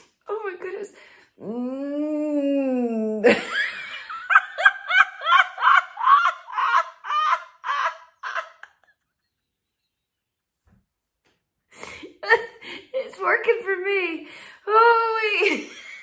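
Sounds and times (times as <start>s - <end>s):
person laughing: 3.2s - 9.3s.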